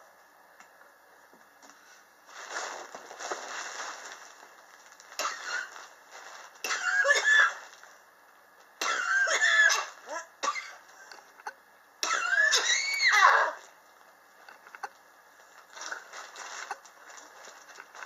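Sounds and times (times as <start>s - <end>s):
person coughing: 5.2s - 5.7s, 6.7s - 7.6s, 8.8s - 11.2s, 12.0s - 12.8s.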